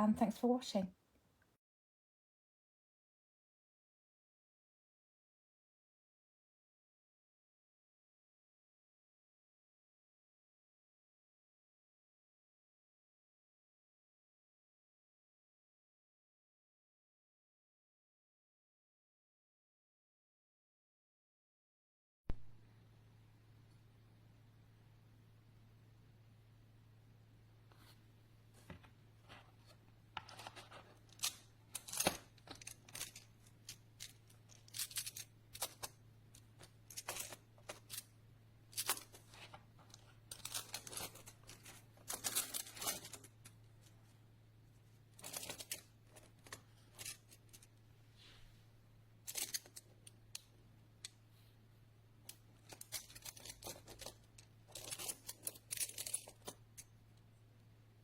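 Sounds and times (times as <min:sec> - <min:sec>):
low steady hum: 0:22.3 - 0:58.0
plastic blocks clicking and rattling: 0:30.2 - 0:38.1, 0:38.7 - 0:43.6, 0:45.1 - 0:47.7, 0:49.2 - 0:50.4, 0:52.3 - 0:56.9.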